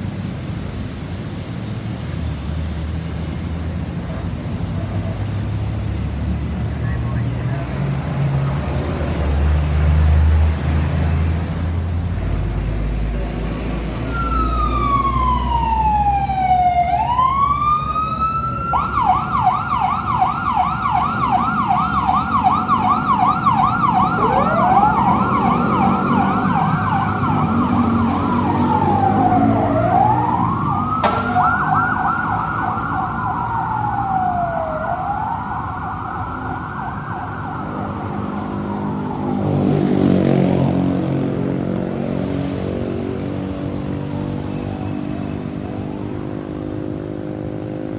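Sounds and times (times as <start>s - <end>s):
traffic noise: 0.0s - 47.9s
vehicle passing: 4.6s - 47.9s
second siren wailing: 13.6s - 41.3s
siren wailing and yelping: 14.0s - 39.8s.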